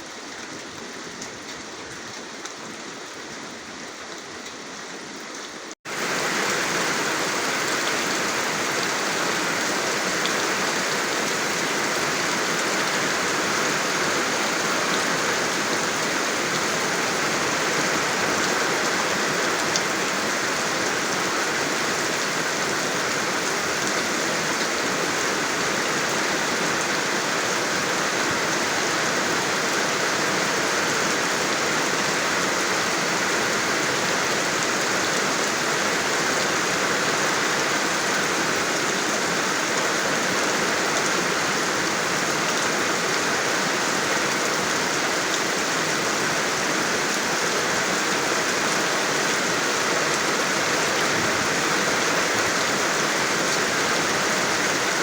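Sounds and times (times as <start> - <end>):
rain pattering: 0.0 - 55.0.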